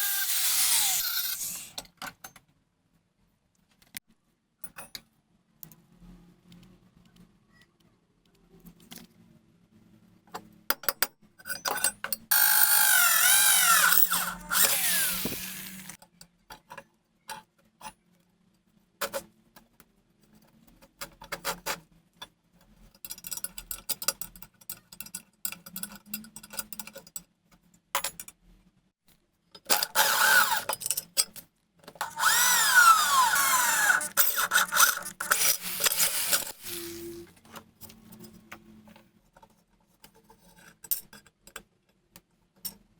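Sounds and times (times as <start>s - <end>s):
high-pitched power tool: 0.0s - 1.8s, 12.3s - 16.0s, 30.0s - 30.7s, 32.0s - 37.2s.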